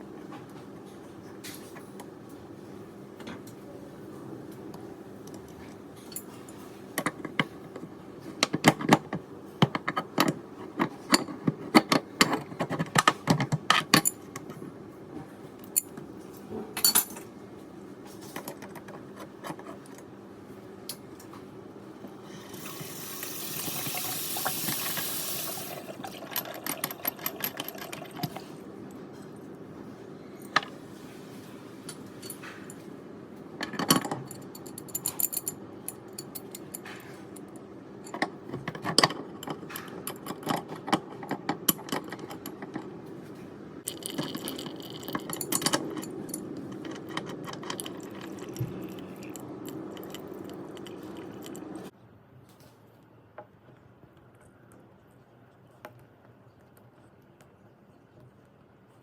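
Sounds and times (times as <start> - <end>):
water tap running: 22.4 - 28.4.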